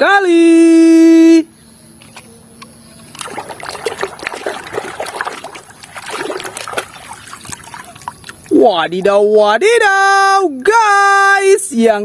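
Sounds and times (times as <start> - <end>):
water trickling and splashing: 3.0 - 9.3.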